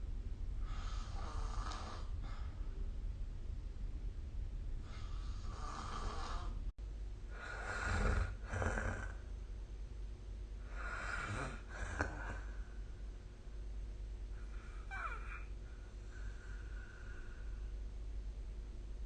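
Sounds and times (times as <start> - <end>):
person snoring: 0.7 - 2.2, 4.9 - 6.6, 7.3 - 9.2, 10.6 - 12.6.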